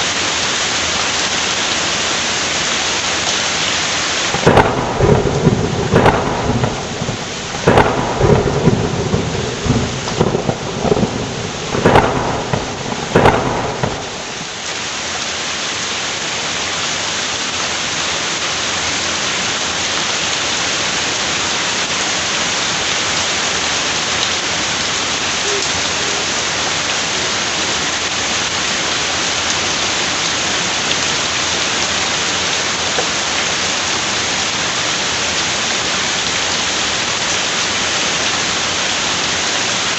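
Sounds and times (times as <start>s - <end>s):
heavy rain: 0.0s - 39.9s
thunder cracks and rumbling: 4.3s - 14.6s.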